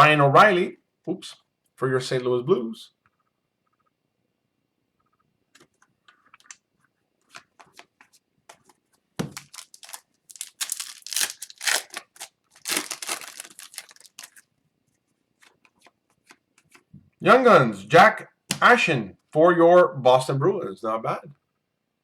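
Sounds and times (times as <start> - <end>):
foil wrapper tearing and crinkling: 9.2 - 14.4.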